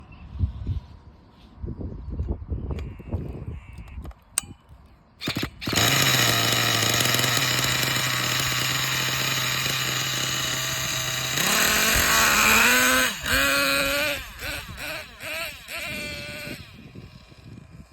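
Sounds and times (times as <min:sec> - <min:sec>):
model engine starting and revving: 0:05.2 - 0:17.9.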